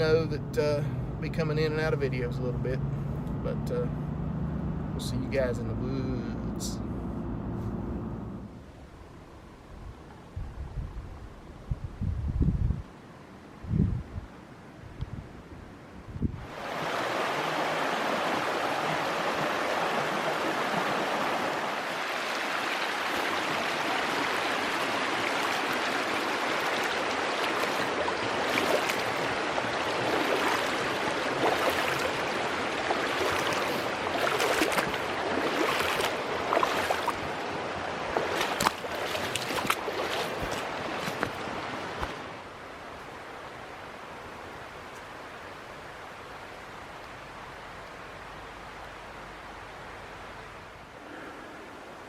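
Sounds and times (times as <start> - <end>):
running water rushing: 16.4 - 52.0.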